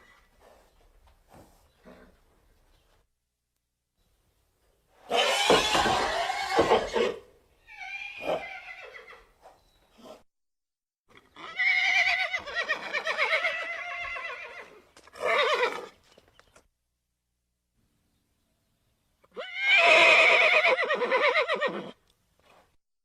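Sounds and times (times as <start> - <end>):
horse whinnying: 5.0 - 9.3, 11.1 - 16.0, 19.3 - 22.0
horse calling: 5.1 - 9.3, 11.1 - 16.0, 19.3 - 22.0.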